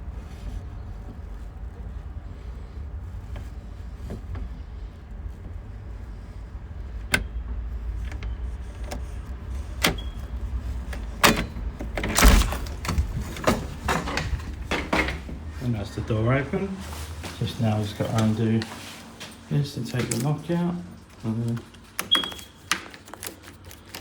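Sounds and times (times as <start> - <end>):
steady low rumble: 0.0 - 18.6
door lock clicks and rattles: 8.0 - 15.4, 21.6 - 24.0.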